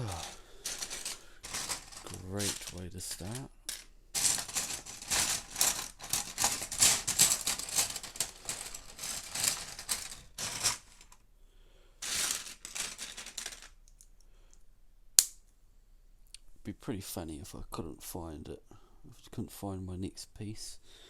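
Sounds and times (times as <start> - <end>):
plastic bricks clattering: 0.0 - 11.2, 12.0 - 14.1.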